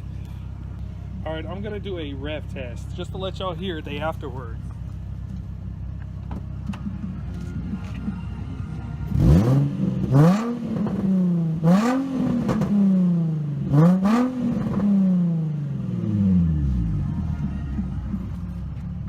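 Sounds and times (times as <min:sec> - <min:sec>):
car engine revving: 0:00.0 - 0:19.0.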